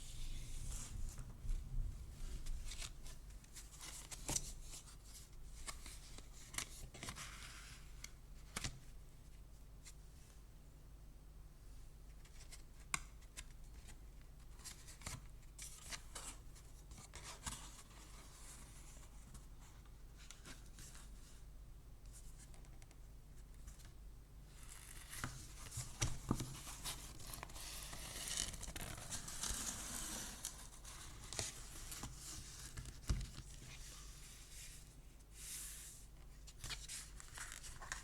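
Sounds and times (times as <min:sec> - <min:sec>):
paper rustling: 0:36.5 - 0:38.0.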